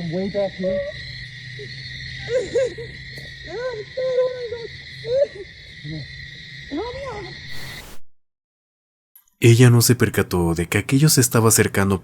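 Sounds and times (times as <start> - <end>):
night insects droning: 0.0 - 8.0.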